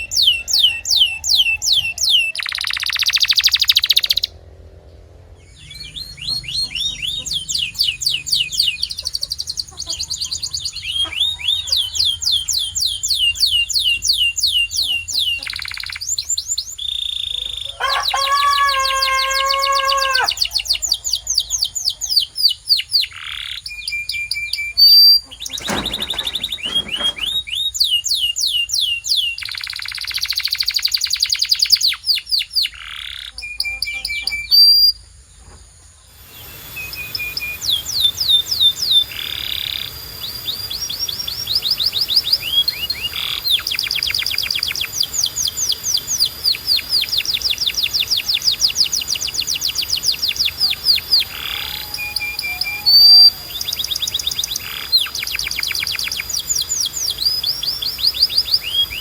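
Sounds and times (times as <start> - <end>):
canary singing trills: 0.0 - 4.4, 5.4 - 35.2, 36.1 - 59.0
faint steady hiss: 35.0 - 59.0.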